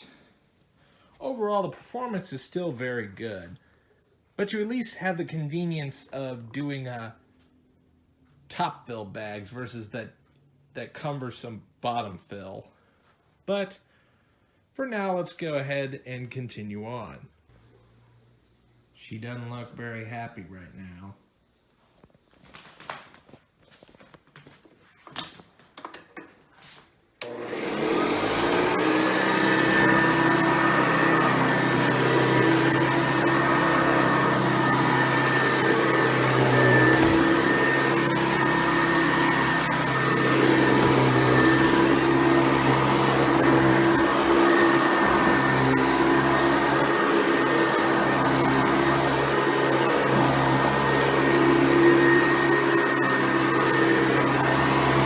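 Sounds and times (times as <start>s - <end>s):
vacuum cleaner motor whining: 27.2s - 55.0s.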